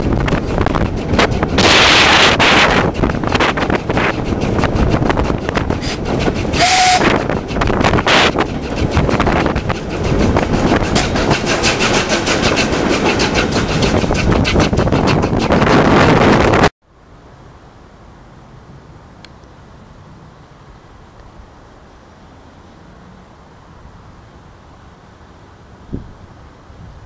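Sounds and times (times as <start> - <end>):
train wheels clattering on rails: 0.0 - 16.7.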